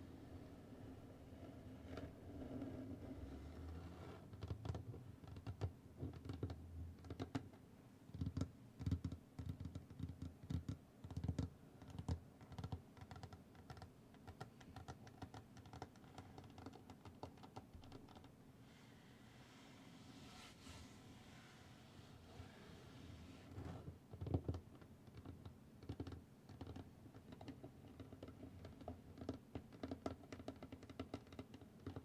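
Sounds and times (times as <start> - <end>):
rapid tapping and clicking: 4.3 - 18.4, 24.1 - 32.0.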